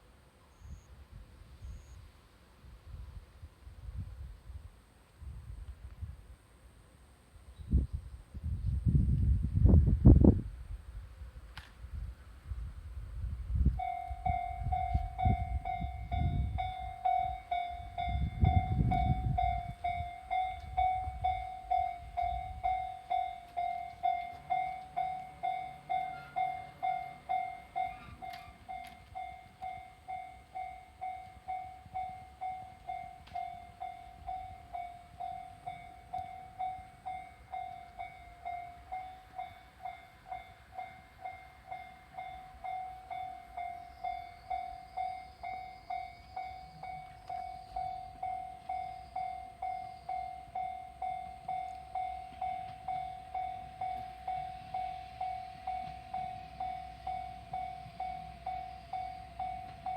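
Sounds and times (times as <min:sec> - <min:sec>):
level-crossing alarm dinging: 0:13.8 - 0:59.9.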